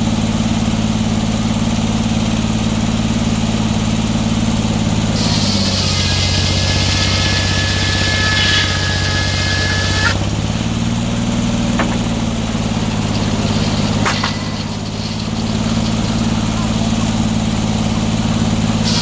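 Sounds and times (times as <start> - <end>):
sawmill engine running: 0.0 - 19.0
saw blade cutting log: 5.1 - 18.1, 18.8 - 19.0.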